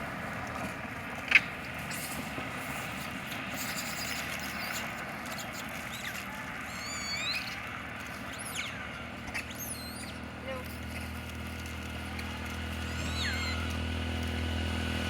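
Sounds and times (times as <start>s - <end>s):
high-pitched animal calls: 3.6s - 11.1s, 12.1s - 13.9s.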